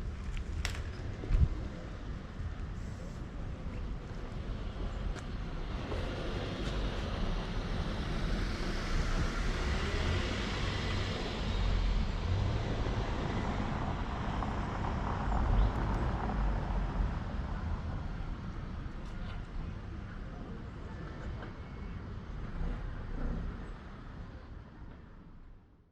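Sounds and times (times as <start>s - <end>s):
low traffic rumble: 0.0s - 25.8s.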